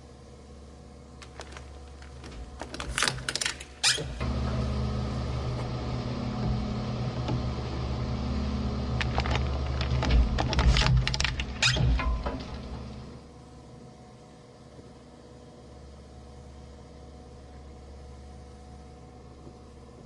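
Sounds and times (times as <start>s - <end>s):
shredder cracking plastic: 1.2s - 4.0s, 8.9s - 11.8s
shredder humming: 1.2s - 13.2s.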